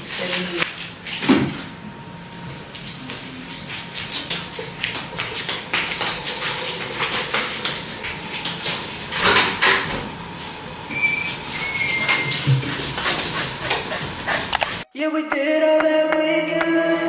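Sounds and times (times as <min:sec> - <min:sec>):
thin high whine: 0:00.7 - 0:06.6.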